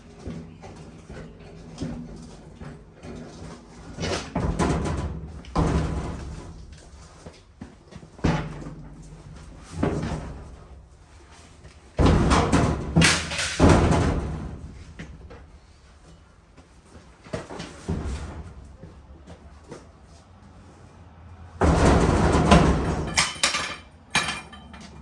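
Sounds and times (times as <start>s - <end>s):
metal knocks and clanks: 0.2s - 7.0s, 21.6s - 25.0s.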